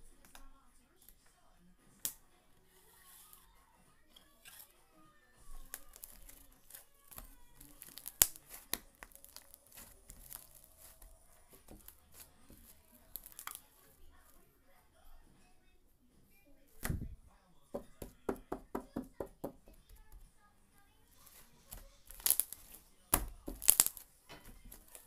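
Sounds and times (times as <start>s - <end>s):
slime crackling and popping: 5.5s - 14.1s, 21.1s - 25.0s.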